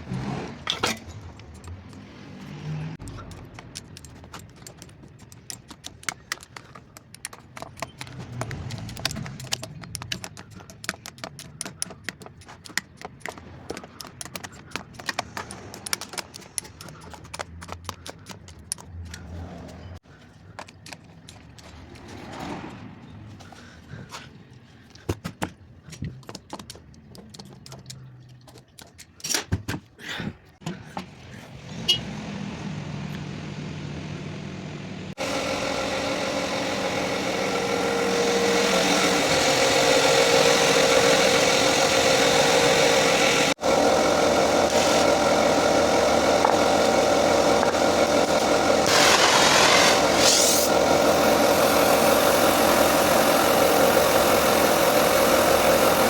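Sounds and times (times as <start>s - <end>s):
scattered clicks and knocks: 3.0s - 19.2s.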